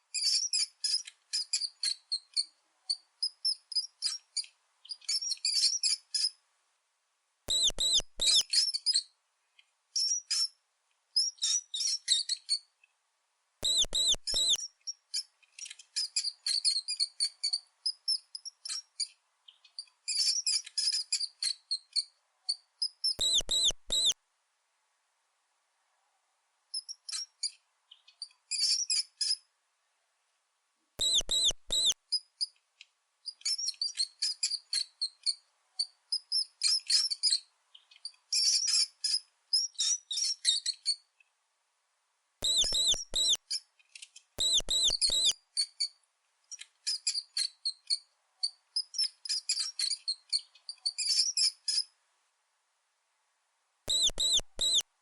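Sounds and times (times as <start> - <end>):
mouse squeaking: 0.1 - 6.4, 7.5 - 9.1, 10.0 - 10.6, 11.2 - 12.7, 13.6 - 24.2, 26.7 - 29.4, 31.0 - 32.6, 33.3 - 41.0, 42.4 - 43.7, 44.4 - 51.9, 53.9 - 54.8.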